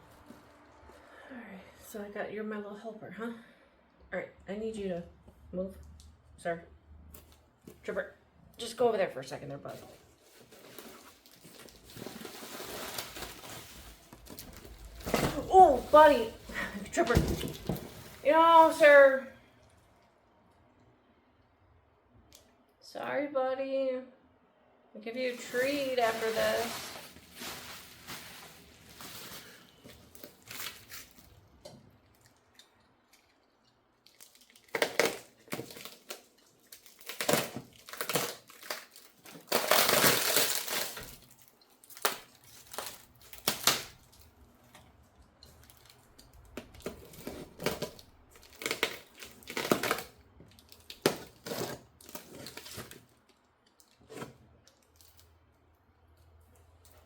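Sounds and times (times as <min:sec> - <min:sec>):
plastic wrap and cardboard tearing: 0:09.6 - 0:19.2, 0:25.2 - 0:32.3, 0:34.0 - 0:44.7, 0:45.5 - 0:55.4.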